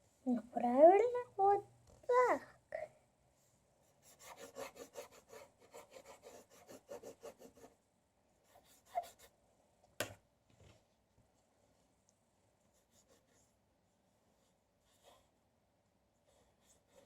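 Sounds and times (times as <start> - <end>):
paintbrush scrubbing on paper: 3.9 - 7.7, 8.5 - 9.4, 12.8 - 13.6.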